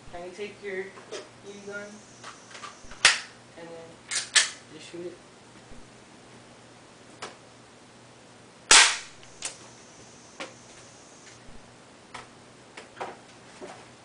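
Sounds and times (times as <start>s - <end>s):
airsoft gun shot: 2.9s - 3.3s, 8.7s - 9.6s.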